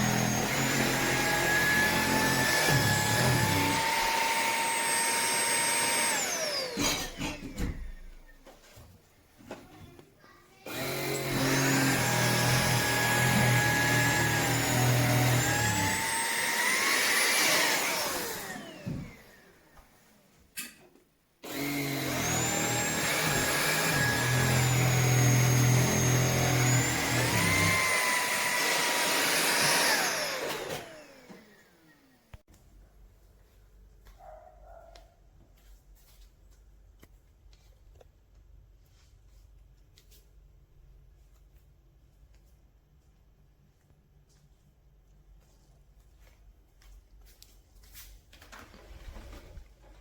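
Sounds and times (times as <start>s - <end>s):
cordless vacuum motor whine: 0.0s - 7.4s, 10.7s - 19.6s, 21.4s - 32.4s.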